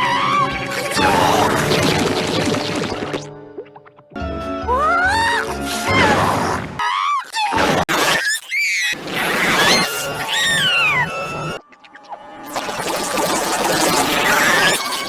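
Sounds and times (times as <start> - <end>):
squealing glides: 7.9 - 15.0.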